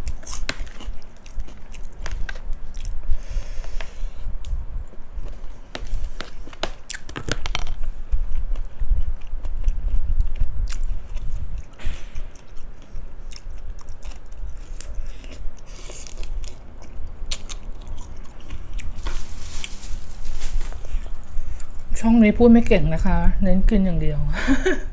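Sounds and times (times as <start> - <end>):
close chewing with crunches: 0.0 - 3.1, 4.4 - 19.8.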